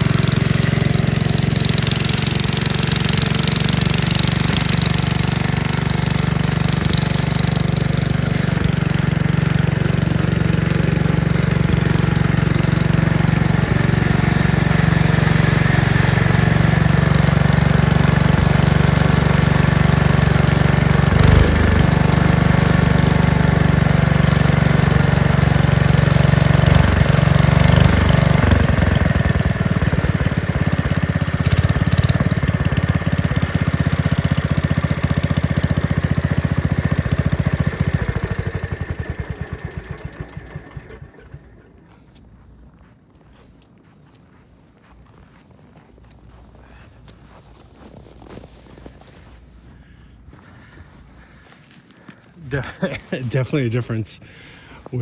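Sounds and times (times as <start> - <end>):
two-wheel tractor engine running: 0.0 - 42.8.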